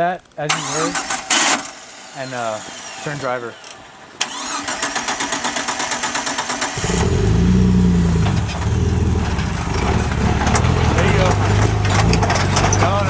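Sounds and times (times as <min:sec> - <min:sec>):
starter motor cranking: 0:00.5 - 0:13.0
engine revving and idling: 0:04.3 - 0:13.0.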